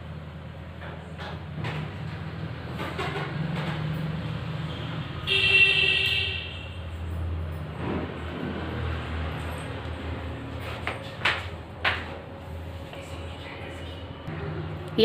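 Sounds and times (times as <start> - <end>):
loud pitched honk: 5.2 - 6.8.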